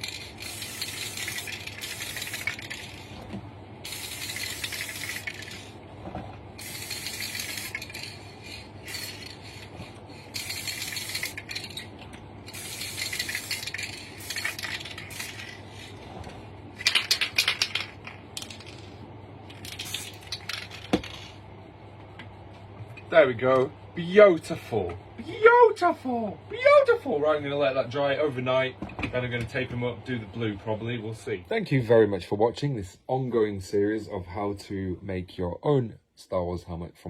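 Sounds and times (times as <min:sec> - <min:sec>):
spray paint can hissing: 0:00.0 - 0:03.1, 0:03.8 - 0:05.7, 0:06.6 - 0:11.9, 0:12.5 - 0:16.0, 0:19.6 - 0:21.2.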